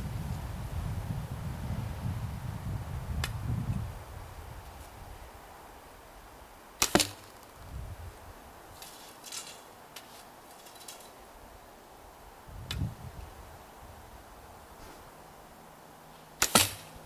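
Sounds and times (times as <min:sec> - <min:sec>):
faint rustling: 0:08.7 - 0:11.4
bow string snap: 0:16.4 - 0:16.9.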